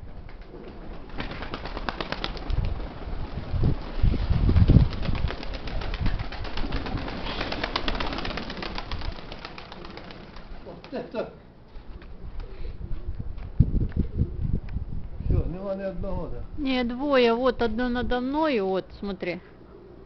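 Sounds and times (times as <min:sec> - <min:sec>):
wind buffeting microphone: 0:02.3 - 0:07.4, 0:12.1 - 0:16.9
pigeons cooing: 0:06.5 - 0:10.9, 0:19.5 - 0:20.0.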